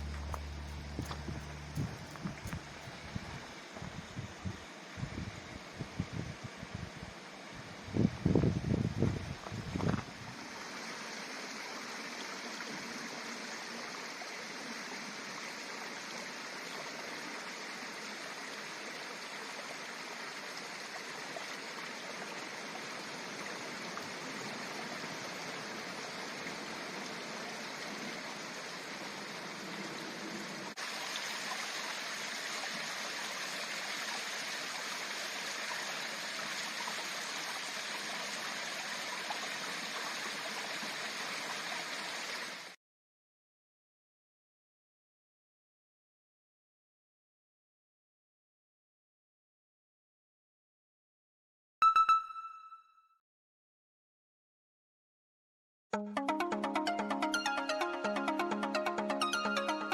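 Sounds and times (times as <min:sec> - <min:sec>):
mountain stream running water: 0:00.0 - 0:05.7, 0:09.4 - 0:42.8.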